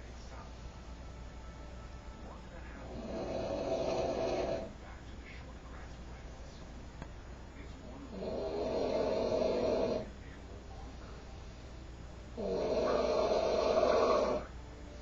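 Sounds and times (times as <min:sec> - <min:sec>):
man snoring loudly: 0:02.8 - 0:04.7, 0:08.1 - 0:10.1, 0:12.4 - 0:14.5.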